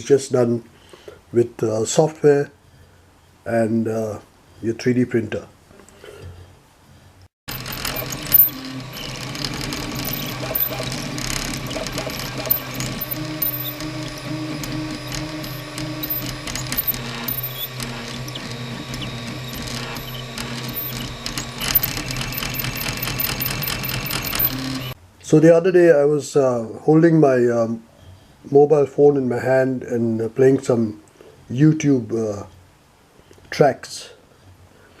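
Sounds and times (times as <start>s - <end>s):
small clicks: 7.5s - 25.0s
stepper motors whining: 7.5s - 25.0s.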